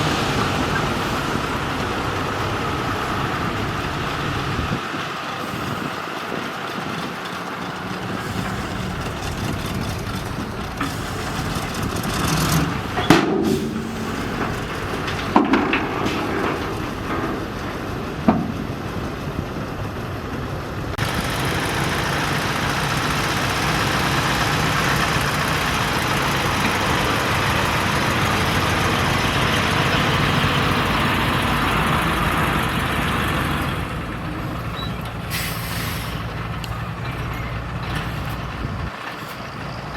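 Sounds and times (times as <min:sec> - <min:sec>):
bulldozer diesel engine: 0:00.0 - 0:39.9.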